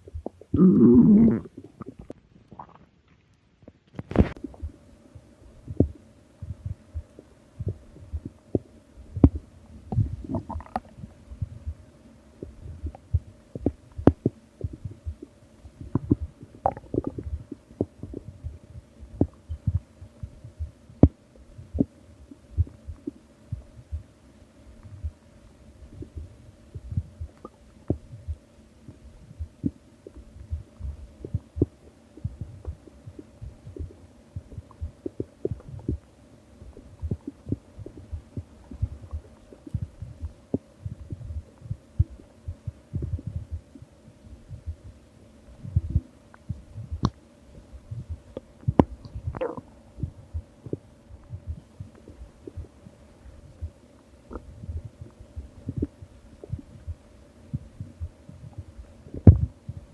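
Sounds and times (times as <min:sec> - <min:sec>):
stomach growling and gurgling: 0:00.0 - 0:04.7, 0:07.6 - 0:11.6, 0:12.4 - 0:21.9, 0:28.9 - 0:42.3, 0:47.9 - 0:52.8, 0:54.3 - 0:59.9
faint steady hum: 0:00.0 - 0:59.9.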